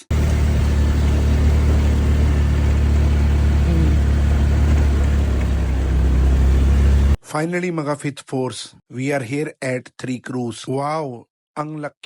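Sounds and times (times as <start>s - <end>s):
engine and road rumble: 0.0s - 7.2s.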